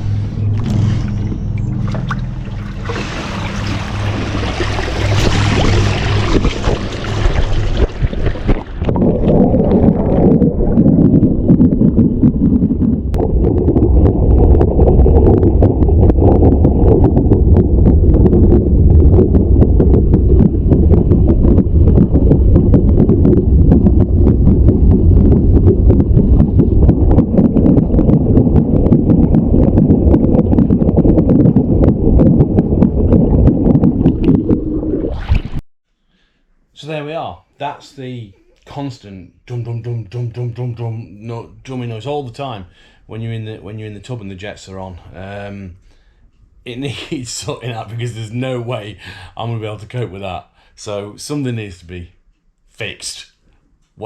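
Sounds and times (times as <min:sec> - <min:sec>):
hiss of jet water and bubbles: 0:00.0 - 0:12.0
muffled underwater jet noise: 0:00.0 - 0:35.6
rapid drumming thump: 0:11.1 - 0:34.5.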